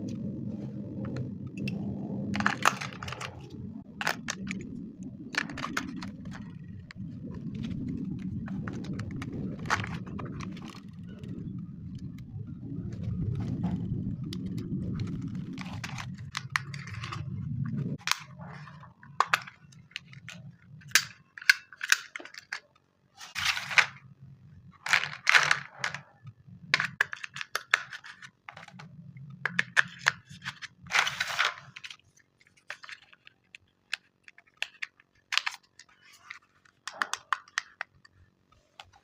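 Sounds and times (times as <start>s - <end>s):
low steady rumble: 0.0s - 34.7s
handling clicks and snaps: 18.0s - 24.0s, 24.8s - 39.0s.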